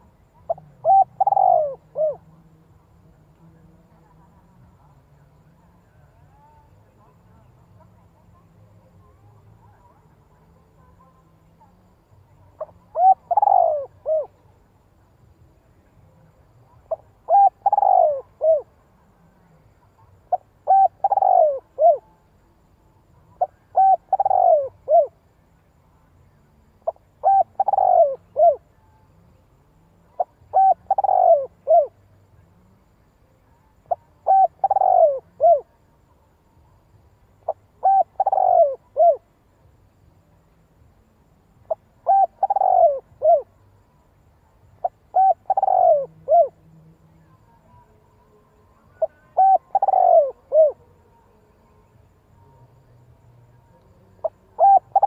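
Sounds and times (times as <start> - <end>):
dove cooing: 0.0 - 2.4, 12.6 - 14.4, 16.7 - 18.7, 20.3 - 22.2, 23.4 - 25.2, 26.8 - 28.7, 30.2 - 32.0, 33.8 - 35.8, 37.5 - 39.3, 41.7 - 43.5, 44.8 - 46.6, 48.9 - 50.9, 54.2 - 55.0.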